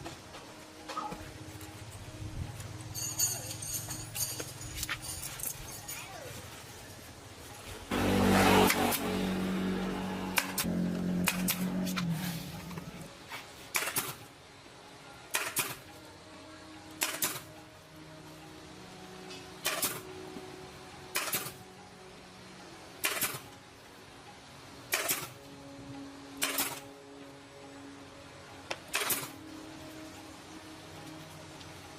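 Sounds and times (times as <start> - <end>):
pitched running sound: 7.9 - 13.2.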